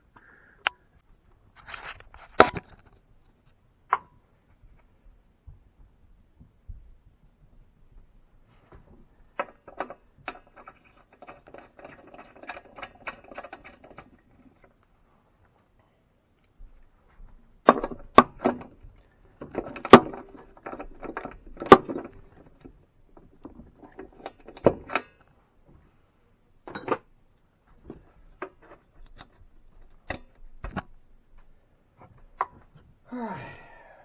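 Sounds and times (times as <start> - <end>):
metallic clanks of tools: 26.7 - 27.1.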